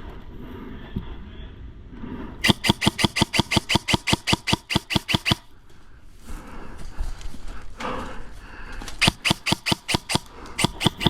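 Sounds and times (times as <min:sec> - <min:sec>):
airsoft gun rapid shots: 0:02.4 - 0:05.5, 0:09.0 - 0:11.0.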